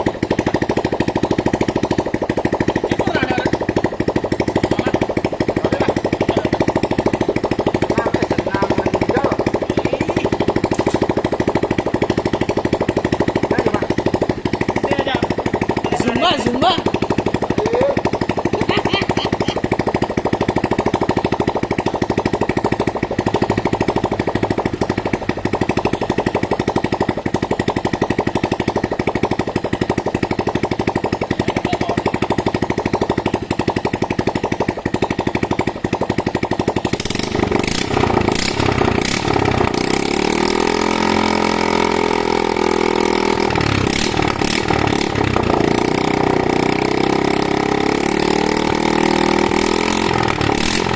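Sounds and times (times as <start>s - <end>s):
clanks: 0.0s - 40.0s
winch engine running: 0.0s - 50.9s.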